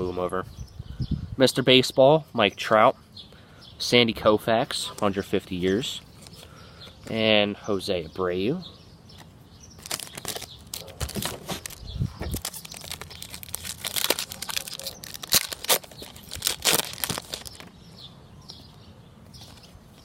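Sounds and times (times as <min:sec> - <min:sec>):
plastic wrapper tearing and crinkling: 0:09.8 - 0:17.7.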